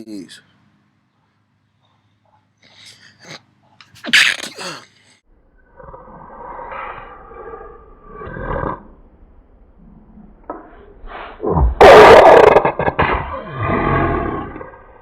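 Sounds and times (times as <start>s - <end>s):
breathy intakes: 2.6s - 5.2s
man sneezing: 4.0s - 4.9s.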